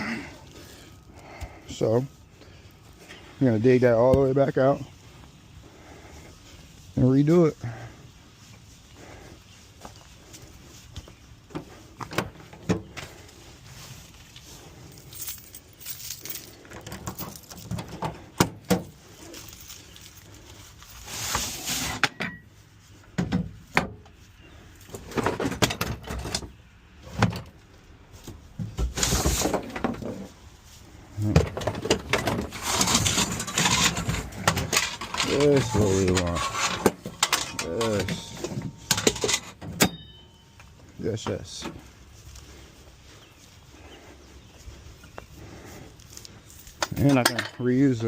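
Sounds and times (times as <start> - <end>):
digging tool scraping earth: 18.9 - 22.4, 30.9 - 39.6.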